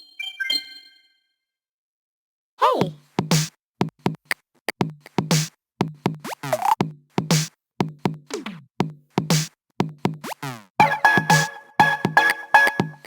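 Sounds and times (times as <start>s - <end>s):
electronic pitch sweeps: 10.8s - 13.0s
electronic ringtone drum loop: 10.8s - 13.0s.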